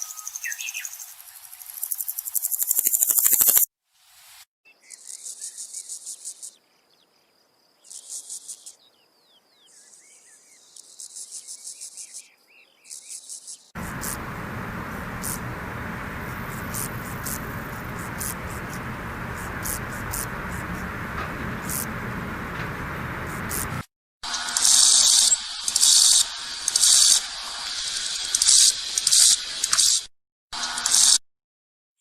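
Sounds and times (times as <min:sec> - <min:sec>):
faint bird chirps: 0:00.0 - 0:02.0
sharp insect clicks: 0:01.6 - 0:03.7, 0:24.6 - 0:27.2, 0:28.0 - 0:30.0
grasshopper buzzing: 0:02.0 - 0:03.6, 0:13.8 - 0:20.9, 0:21.6 - 0:22.0
steady hiss: 0:13.8 - 0:23.8.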